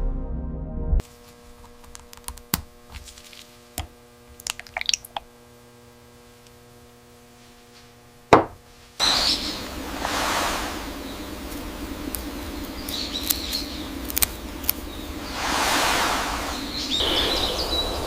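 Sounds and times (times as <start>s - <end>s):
steady electrical hum: 1.0s - 18.0s
broad rushing noise: 9.1s - 12.4s, 15.2s - 18.0s.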